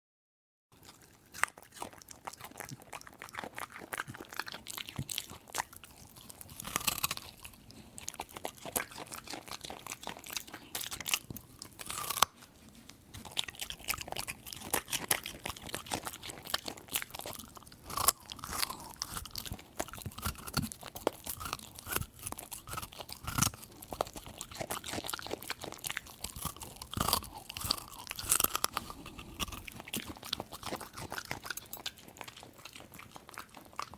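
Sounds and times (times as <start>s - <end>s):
dog crunching a carrot: 0.7s - 33.9s.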